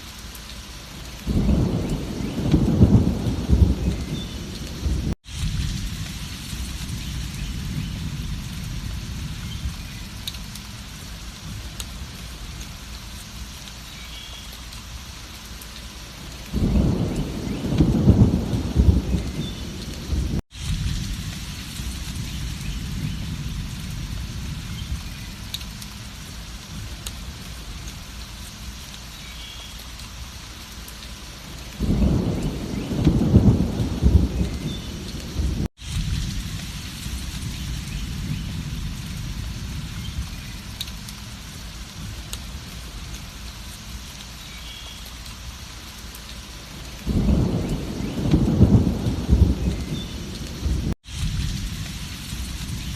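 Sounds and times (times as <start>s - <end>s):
steady rain: 0.0s - 52.9s
thunder rolling: 1.3s - 9.9s, 16.5s - 25.1s, 31.8s - 40.3s, 47.0s - 52.9s.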